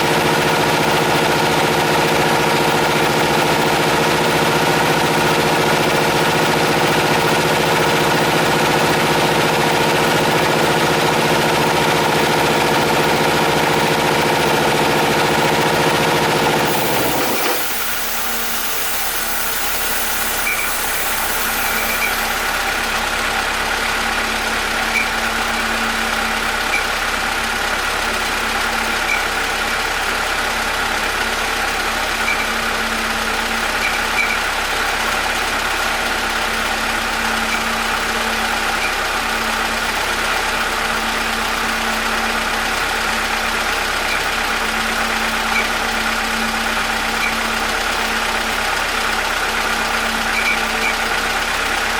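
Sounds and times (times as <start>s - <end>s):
air compressor humming: 0.0s - 23.6s.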